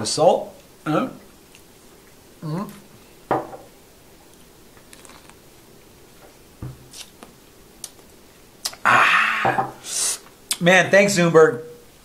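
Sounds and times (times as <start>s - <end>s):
wet mouth sounds sucking: 6.9s - 7.2s, 8.6s - 8.8s, 9.8s - 10.6s.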